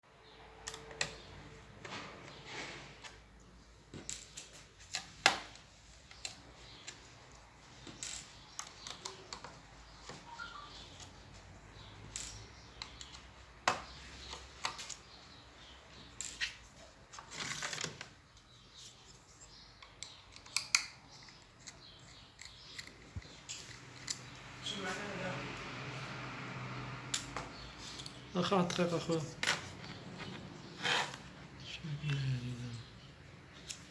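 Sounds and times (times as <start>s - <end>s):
hands tapping laptop parts: 3.9s - 15.2s.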